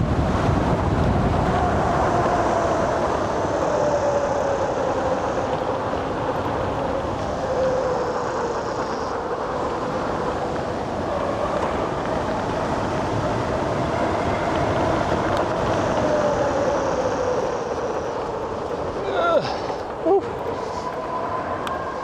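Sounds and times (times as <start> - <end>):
bike tyre noise on pavement: 0.0 - 22.0
wind rushing over microphone: 0.0 - 22.0.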